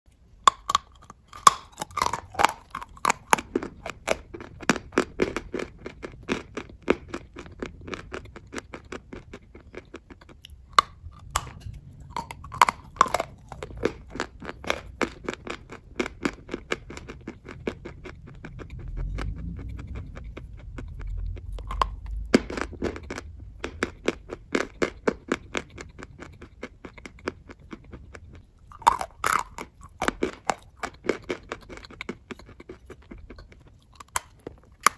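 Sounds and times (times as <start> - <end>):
person crunching chalk: 0.5 - 18.1.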